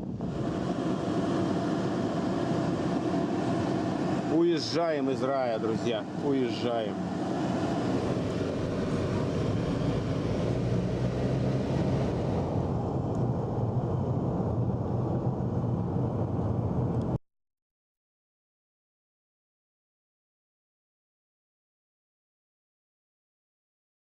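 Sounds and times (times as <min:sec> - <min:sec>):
car driving away: 0:07.3 - 0:14.0.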